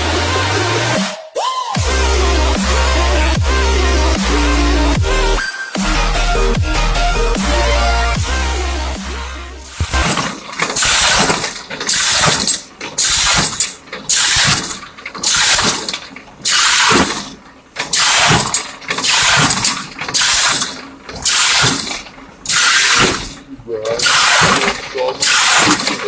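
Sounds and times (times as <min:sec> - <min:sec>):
drill cutting plastic pipe hissing: 0:09.7 - 0:26.0.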